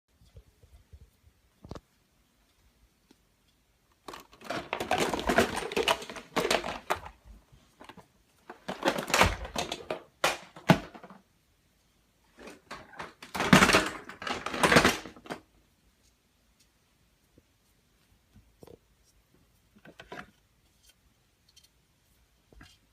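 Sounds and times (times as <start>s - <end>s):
toys clicking and rattling: 4.0s - 7.2s, 7.8s - 11.2s, 12.4s - 15.4s.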